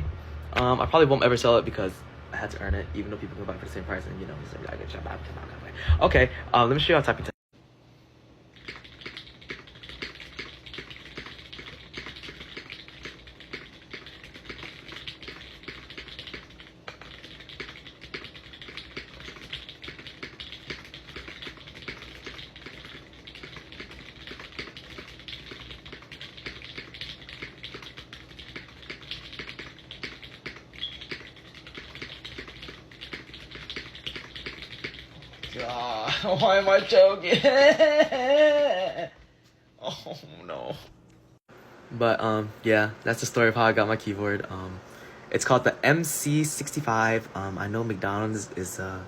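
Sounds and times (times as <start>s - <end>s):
fast typing on mechanical keyboard: 8.6s - 36.9s.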